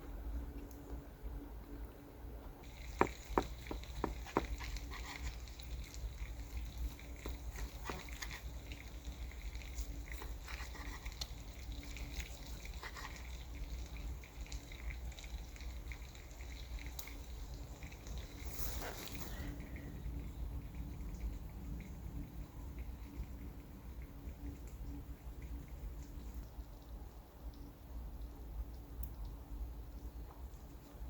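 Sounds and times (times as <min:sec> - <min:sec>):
wet chewing: 0:02.6 - 0:20.0.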